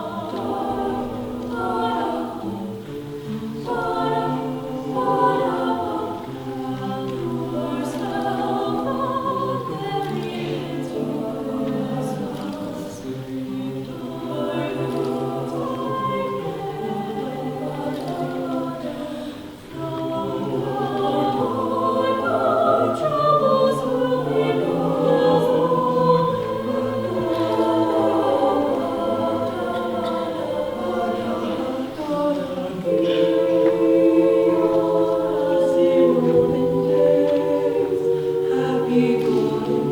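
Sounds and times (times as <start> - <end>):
choir singing in harmony: 0.0 - 39.9.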